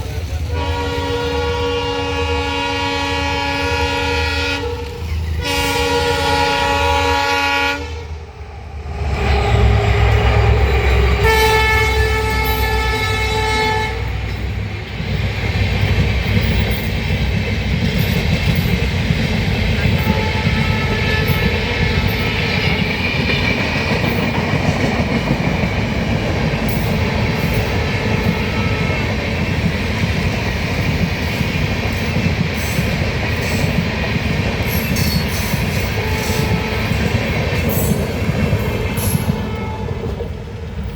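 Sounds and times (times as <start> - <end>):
train rumbling past: 0.0 - 40.9
wheels clicking over rail joints: 14.0 - 40.9.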